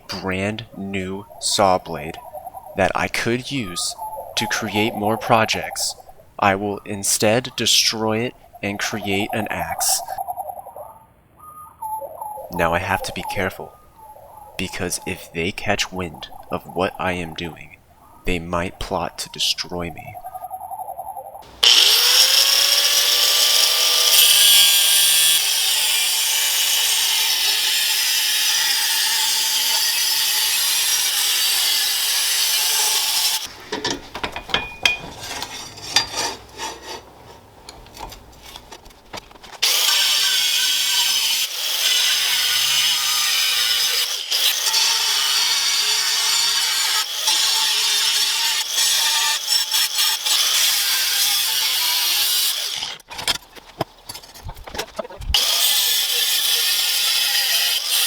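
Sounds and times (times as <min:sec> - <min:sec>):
power tool cutting steel: 0:21.6 - 0:33.9, 0:39.6 - 0:53.0, 0:55.4 - 0:58.0
clicks and knocks: 0:33.5 - 0:39.6.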